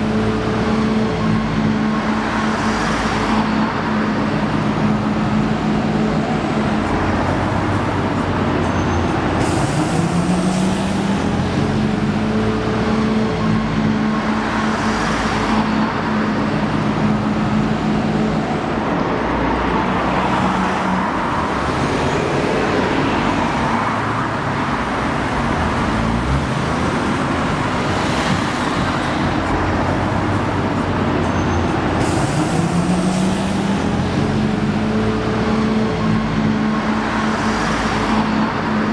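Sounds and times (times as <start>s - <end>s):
road traffic passing: 0.0s - 38.9s
engine note rising: 17.0s - 37.2s.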